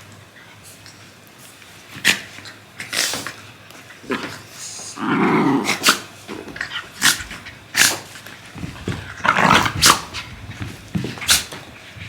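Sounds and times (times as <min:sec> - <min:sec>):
dog growling: 0:04.9 - 0:06.1, 0:09.0 - 0:10.1
scuffling knocks: 0:08.2 - 0:12.0.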